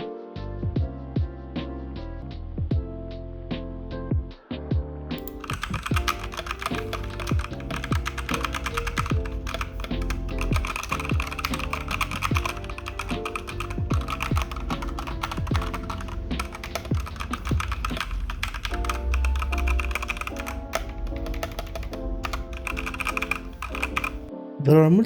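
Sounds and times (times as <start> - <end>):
background music with bass: 0.0 - 25.0
mechanical keyboard typing: 5.2 - 24.3.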